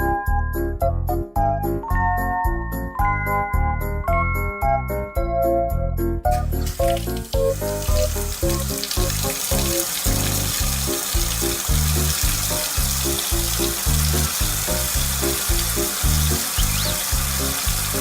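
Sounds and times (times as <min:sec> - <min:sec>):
cheerful background music: 0:00.0 - 0:18.0
food frying sizzle: 0:06.3 - 0:18.0.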